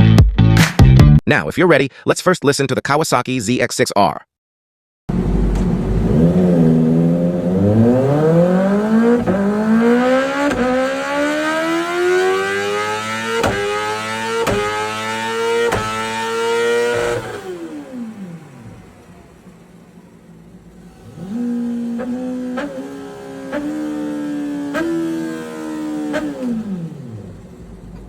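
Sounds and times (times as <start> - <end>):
engine cracks: 5.1 - 22.8, 26.0 - 28.0
motorcycle engine accelerating: 5.1 - 28.0.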